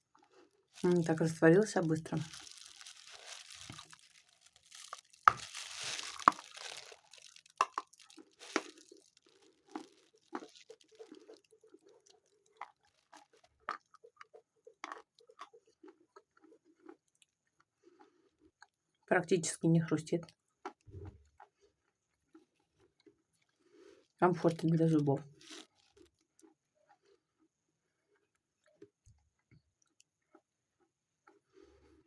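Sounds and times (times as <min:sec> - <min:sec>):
person chewing chalk: 0:02.2 - 0:19.0, 0:20.4 - 0:24.1, 0:25.4 - 0:32.0.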